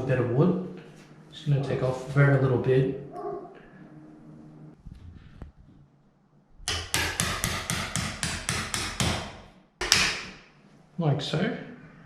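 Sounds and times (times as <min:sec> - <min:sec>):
hammer tapping a chisel: 0:06.7 - 0:10.3.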